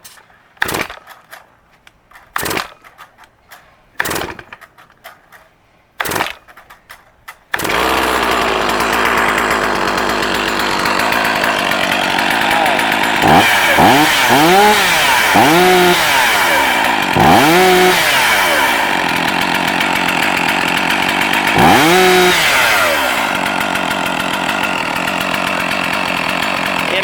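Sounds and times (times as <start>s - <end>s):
chainsaw engine revving and idling: 7.5s - 27.0s.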